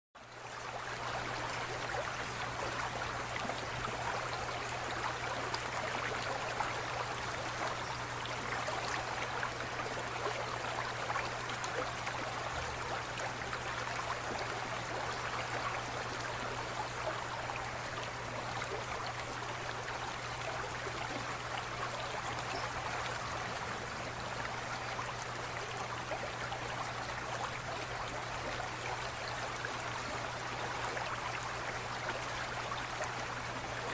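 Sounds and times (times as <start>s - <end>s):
aquarium water trickling and bubbling: 0.2s - 33.9s.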